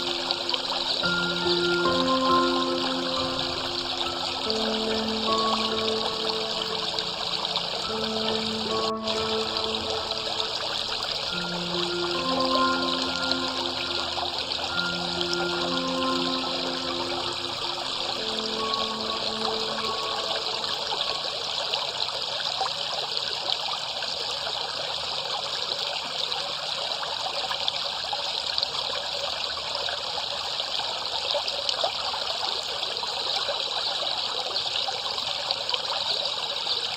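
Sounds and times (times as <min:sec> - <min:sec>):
held musical notes: 0:00.0 - 0:21.6
water gurgling and trickling: 0:00.0 - 0:32.0.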